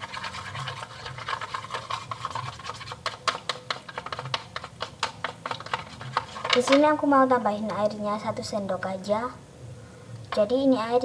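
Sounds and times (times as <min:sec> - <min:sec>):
stirrer scraping a container: 0:00.0 - 0:07.8.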